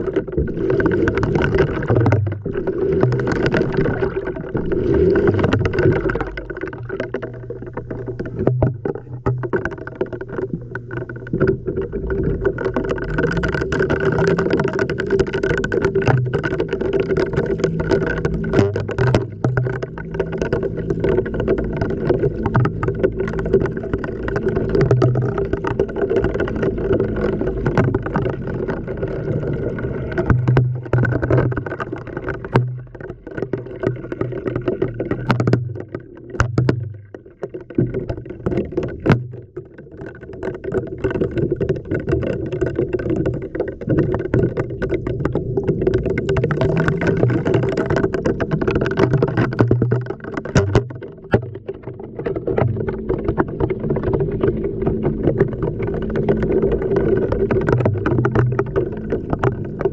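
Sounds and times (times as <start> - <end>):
water sloshing: 0.0 - 59.9
objects knocking against drum: 35.2 - 37.1, 45.9 - 51.8.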